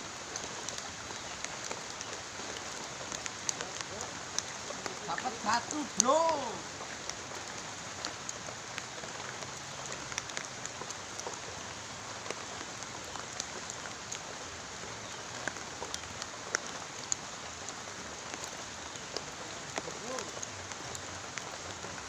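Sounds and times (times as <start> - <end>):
raindrops ticking close by: 0.0 - 22.0
steady rain hiss: 0.0 - 22.0.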